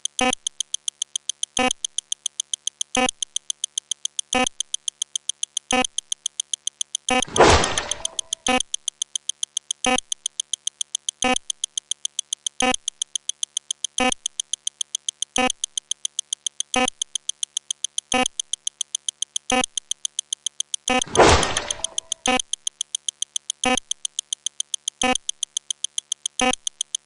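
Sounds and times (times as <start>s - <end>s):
rapid electronic ticks: 0.0s - 27.0s
pitched electronic blip: 7.1s - 8.6s, 20.9s - 22.5s
loud noisy hit: 7.3s - 8.3s, 21.1s - 22.2s.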